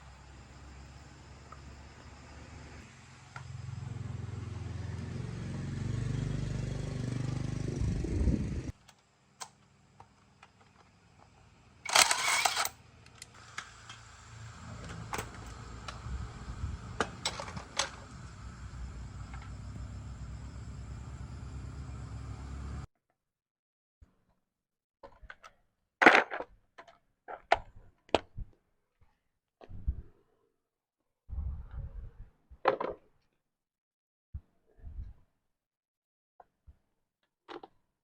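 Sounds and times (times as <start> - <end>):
motorbike engine running: 3.4 - 8.7, 14.3 - 22.9
clicks: 11.9 - 14.0.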